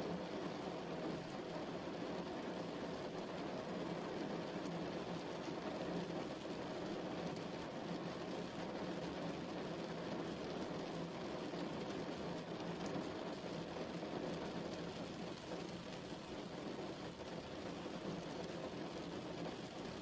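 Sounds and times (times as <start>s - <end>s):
steady rain patter: 0.0s - 20.0s.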